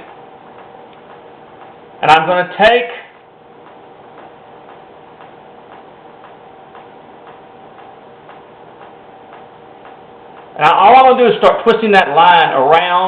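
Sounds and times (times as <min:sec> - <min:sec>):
clock ticking: 0:00.0 - 0:01.8, 0:03.6 - 0:10.9
faint steady hum: 0:00.0 - 0:13.0.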